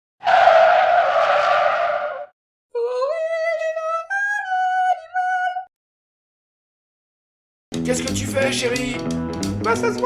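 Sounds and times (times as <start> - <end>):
loud screech: 0.2 - 2.3.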